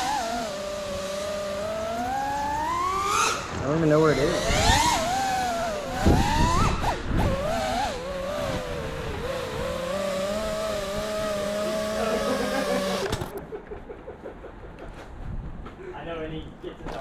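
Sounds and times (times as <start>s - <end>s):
drone motors whining: 0.0s - 13.4s.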